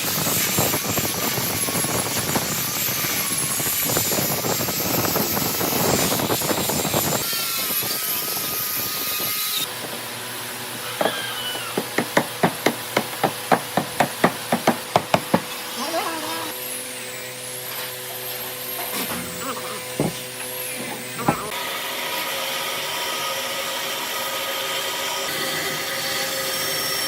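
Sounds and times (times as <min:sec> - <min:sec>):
noisy woodworking tool: 0:00.0 - 0:27.0
rapid hammering on wood: 0:11.0 - 0:15.5.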